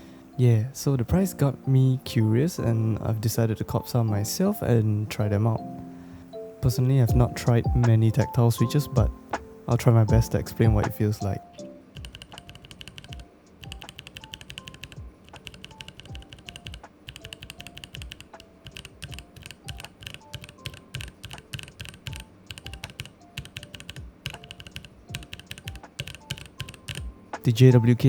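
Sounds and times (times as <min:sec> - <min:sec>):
soft background music: 0:00.0 - 0:28.0
mechanical keyboard clacking: 0:11.9 - 0:27.1.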